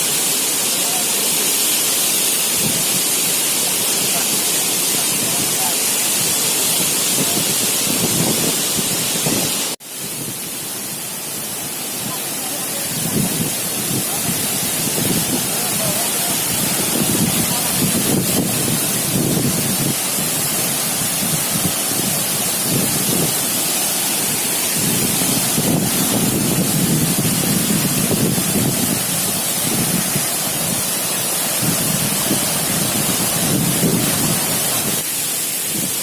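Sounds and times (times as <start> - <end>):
waterfall pouring heavily: 0.0 - 36.0.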